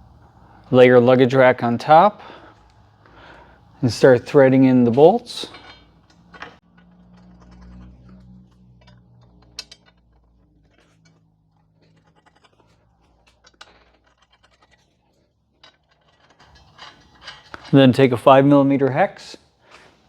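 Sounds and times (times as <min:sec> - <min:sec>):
faint metal scraping: 0:03.3 - 0:19.0.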